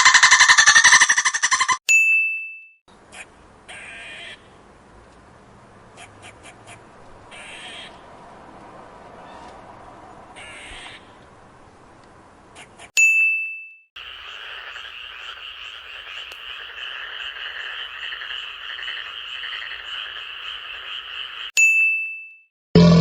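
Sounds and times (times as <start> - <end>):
frogs croaking: 14.0 - 21.6
bright ringing ding: 22.8 - 23.0.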